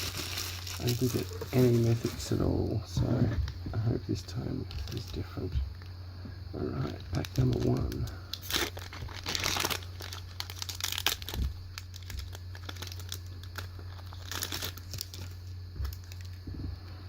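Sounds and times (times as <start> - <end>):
foil wrapper tearing and crinkling: 0.0 - 2.4, 6.8 - 16.4
steady low hum: 0.0 - 17.0.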